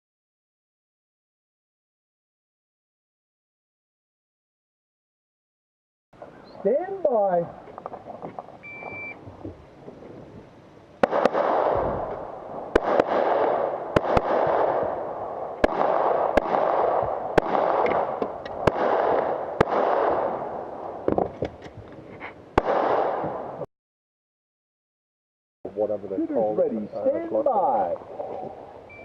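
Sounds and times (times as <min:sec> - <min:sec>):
pistol shots: 0:11.0 - 0:21.0, 0:22.6 - 0:23.5.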